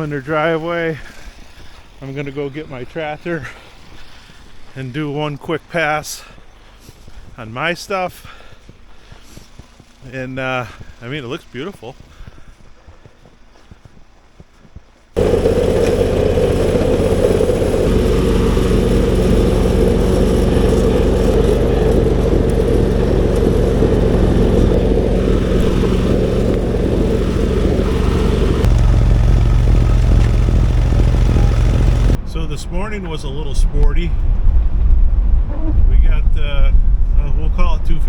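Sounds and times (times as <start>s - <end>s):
snowblower through wet snow: 15.2s - 32.2s
tractor engine running: 15.2s - 32.4s.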